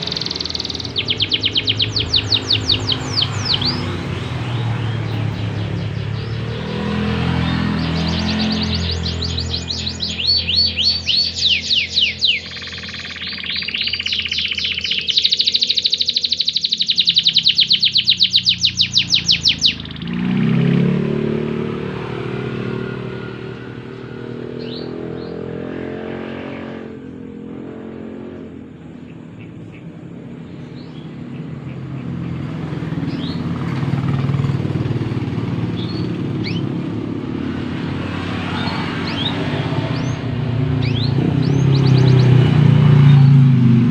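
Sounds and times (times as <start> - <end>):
faint bird chirps: 0.0 - 6.6, 7.4 - 20.5
canary singing trills: 0.0 - 25.8, 28.9 - 43.9
engine rumble: 0.0 - 43.9.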